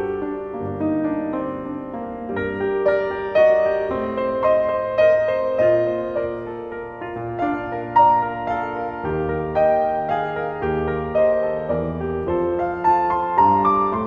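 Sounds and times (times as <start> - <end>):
soft slow piano melody: 0.0 - 14.0.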